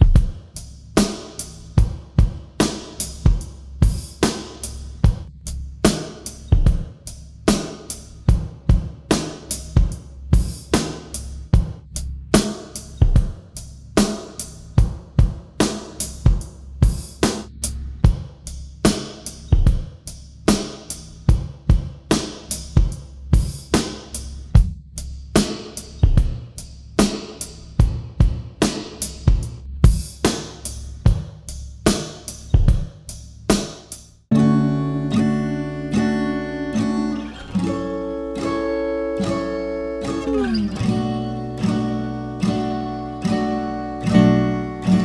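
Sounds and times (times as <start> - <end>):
drum kit playing a beat: 0.0 - 38.5, 40.1 - 45.0
bass notes: 16.4 - 20.3.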